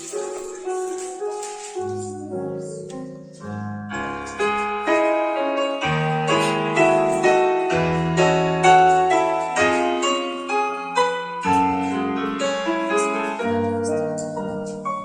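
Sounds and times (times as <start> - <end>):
piano playing slow chords: 0.0 - 15.0.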